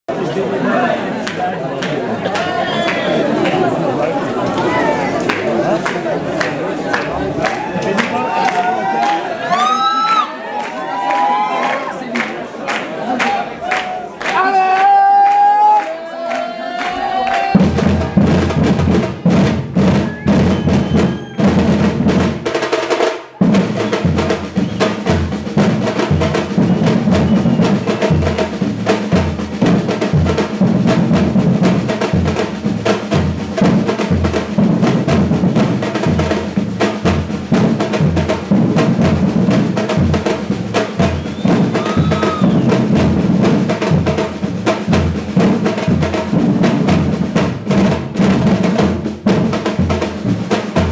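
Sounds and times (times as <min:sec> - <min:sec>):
samba percussion ensemble: 0:16.8 - 0:50.9.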